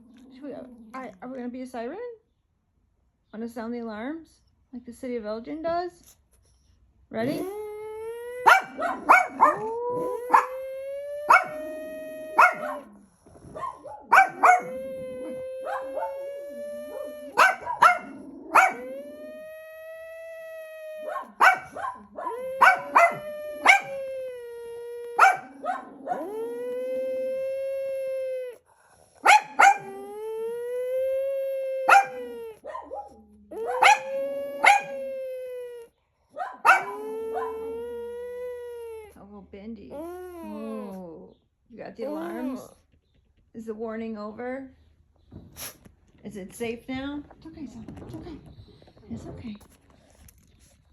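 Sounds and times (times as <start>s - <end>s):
dog howling: 7.2s - 39.2s, 39.9s - 41.3s, 42.0s - 42.8s
dog yipping: 8.2s - 13.0s, 13.6s - 19.3s, 21.0s - 26.9s, 29.2s - 30.0s, 31.8s - 37.9s.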